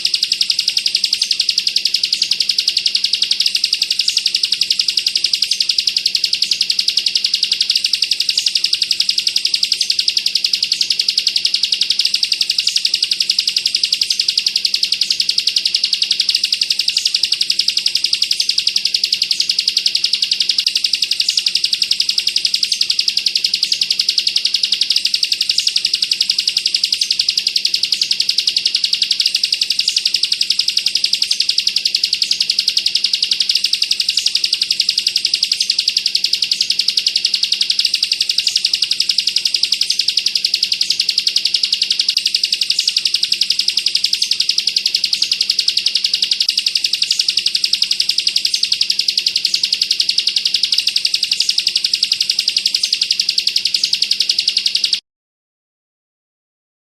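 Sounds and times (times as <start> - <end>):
bird singing rapid rattling trill: 0.0 - 55.0.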